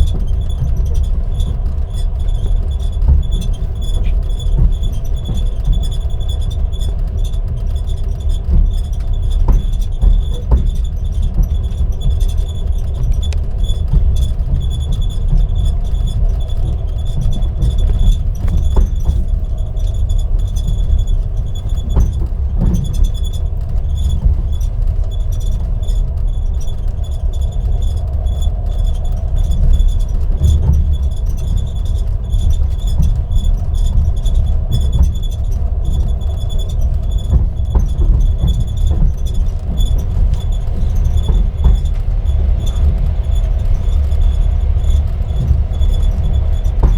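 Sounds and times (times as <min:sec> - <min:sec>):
train carriage rumble: 0:00.0 - 0:46.9.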